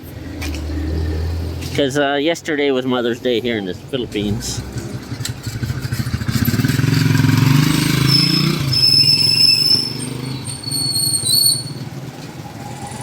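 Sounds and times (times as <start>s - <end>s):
vehicle engine passing: 0.0s - 1.9s, 3.9s - 13.0s
thin high whistling: 7.6s - 13.0s.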